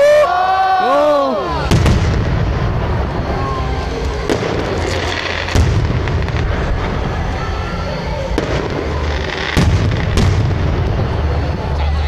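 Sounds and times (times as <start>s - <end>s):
firework whistle: 0.9s - 12.0s
firework crackling: 1.1s - 12.0s
sharp firework crack: 1.6s - 12.0s
firework shells booming: 1.7s - 7.4s, 8.4s - 11.7s.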